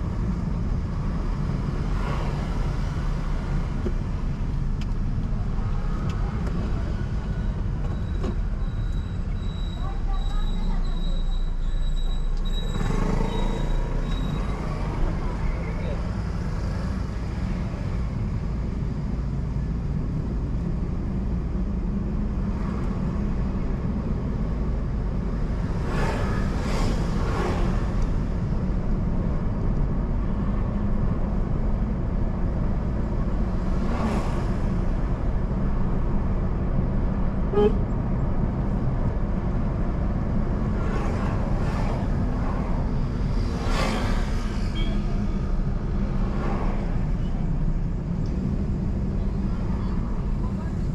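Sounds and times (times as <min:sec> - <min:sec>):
car driving on road: 0:00.0 - 0:50.9
vehicles passing whoosh: 0:12.5 - 0:50.9.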